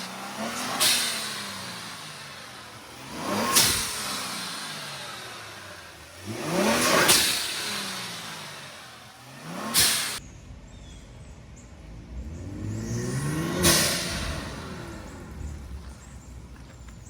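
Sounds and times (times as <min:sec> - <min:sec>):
blow-off valve whoosh: 0:00.0 - 0:05.8, 0:09.6 - 0:10.2, 0:12.6 - 0:15.8
car engine revving: 0:00.0 - 0:17.0.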